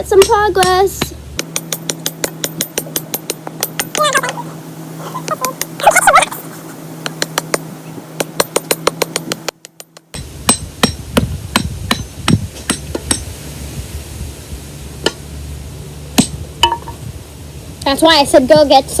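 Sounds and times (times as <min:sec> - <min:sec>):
hammer striking rock: 0:00.2 - 0:04.2, 0:07.1 - 0:13.3, 0:16.2 - 0:17.0.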